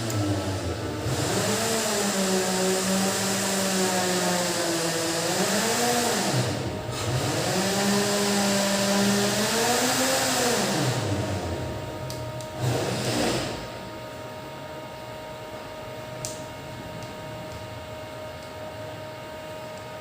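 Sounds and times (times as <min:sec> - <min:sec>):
small electric motor humming: 0:00.0 - 0:13.8.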